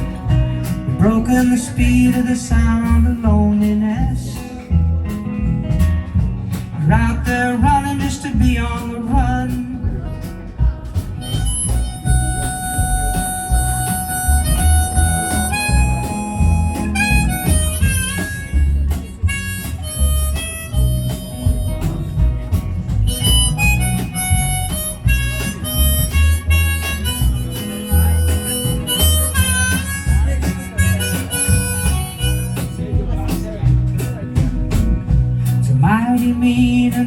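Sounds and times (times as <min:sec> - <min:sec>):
bass guitar: 0:00.0 - 0:37.0
drums: 0:00.0 - 0:37.0
strummed guitar: 0:00.0 - 0:37.0
harmonica lead: 0:11.1 - 0:33.3.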